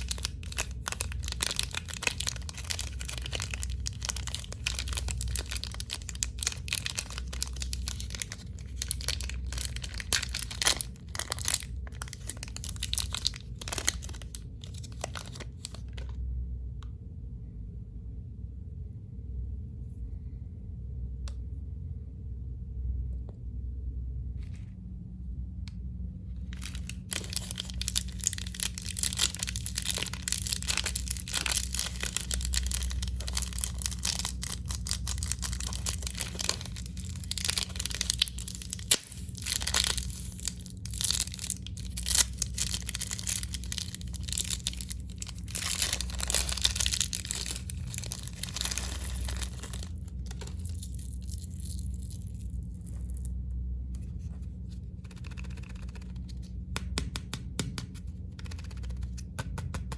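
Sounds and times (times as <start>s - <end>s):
plastic wrappers crinkling: 0.0s - 16.2s, 26.5s - 53.3s
steady low hum: 0.0s - 59.9s.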